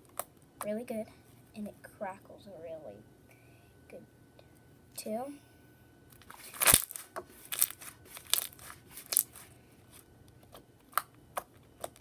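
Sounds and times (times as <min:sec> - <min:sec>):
slime popping and clicking: 0:06.6 - 0:09.3.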